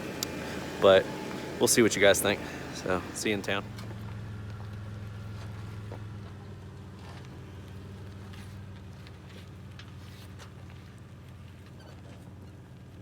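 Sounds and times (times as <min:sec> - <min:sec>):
car engine humming: 0:00.0 - 0:13.0.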